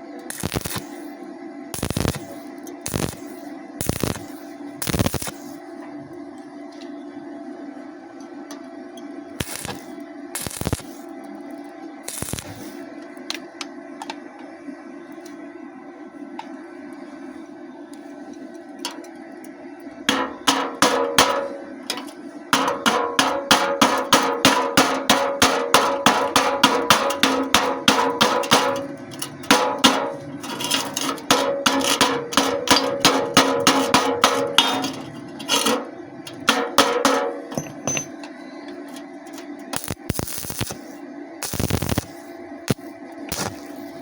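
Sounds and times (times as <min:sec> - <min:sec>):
steady low hum: 0:00.0 - 0:44.0
hammer tapping ringing sheet metal: 0:20.1 - 0:22.0, 0:22.6 - 0:38.4.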